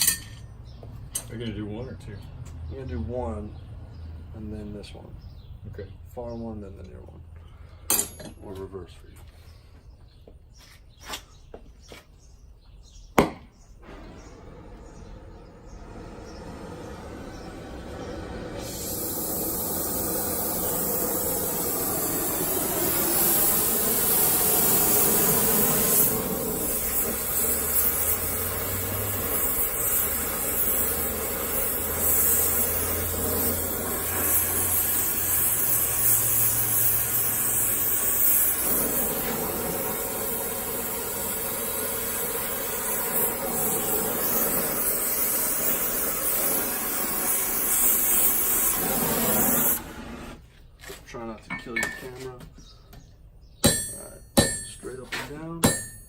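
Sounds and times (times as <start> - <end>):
torch flame hissing: 13.8 - 50.5.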